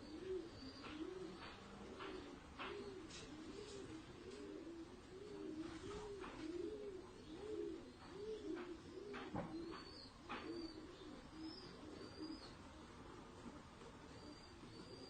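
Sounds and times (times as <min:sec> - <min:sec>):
dove cooing: 0:00.0 - 0:15.0.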